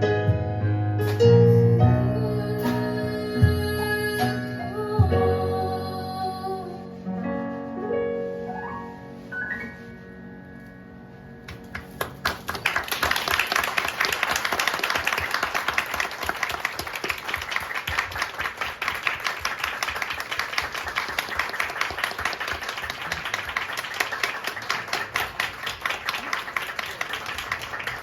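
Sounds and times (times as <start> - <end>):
audience applause: 11.5 - 28.0.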